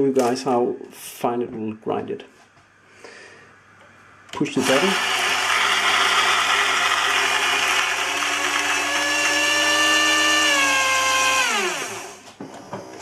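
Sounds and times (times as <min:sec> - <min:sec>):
coffee grinder grinding beans: 0:04.6 - 0:12.3.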